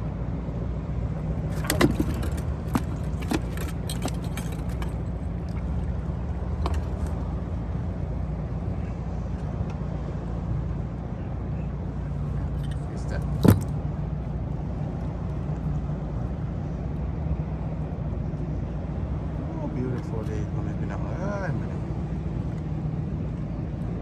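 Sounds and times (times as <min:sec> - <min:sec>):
boat motor humming: 0:01.3 - 0:09.2
fishing gear clicks and knocks: 0:01.4 - 0:07.6, 0:12.1 - 0:14.1.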